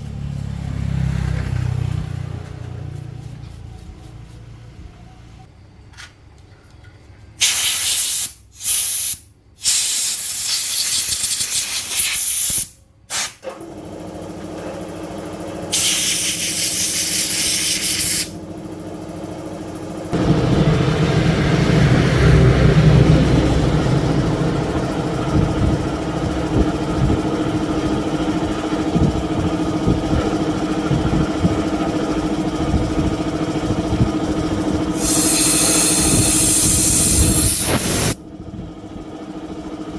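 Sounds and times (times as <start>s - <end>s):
hissing air bursts: 7.4s - 13.4s, 15.7s - 18.4s, 35.0s - 38.2s
steady motor hum: 13.6s - 39.9s.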